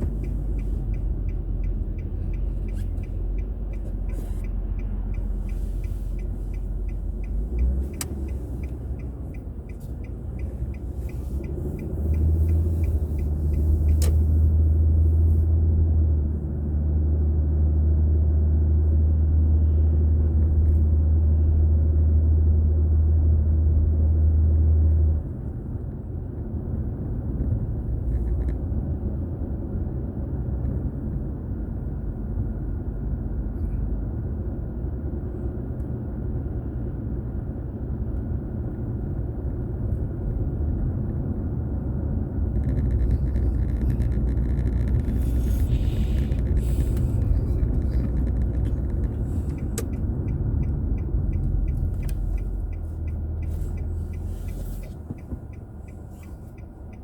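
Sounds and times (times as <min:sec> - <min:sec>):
sharp clicks: 0:00.0 - 0:14.3
road and engine rumble: 0:00.0 - 0:57.0.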